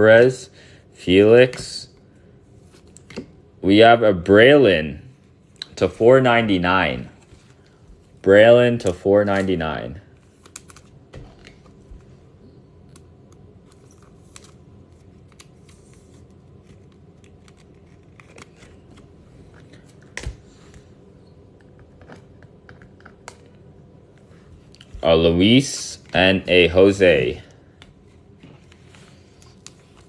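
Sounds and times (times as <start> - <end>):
card packaging clicks and rustles: 10.2 - 12.1, 12.8 - 20.9.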